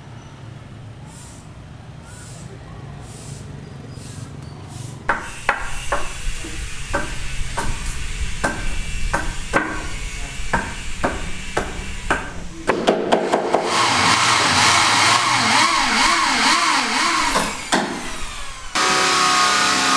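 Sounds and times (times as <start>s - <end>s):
loud machine noise: 5.3s - 19.9s.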